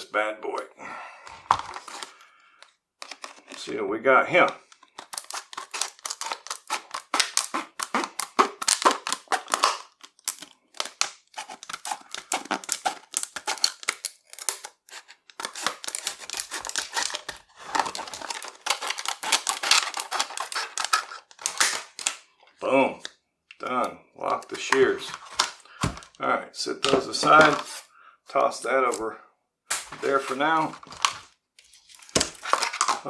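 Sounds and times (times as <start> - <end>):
plastic crinkling: 4.6 - 22.3, 24.6 - 26.2, 26.9 - 27.9, 29.7 - 33.0
shears snipping through plastic: 5.0 - 22.1.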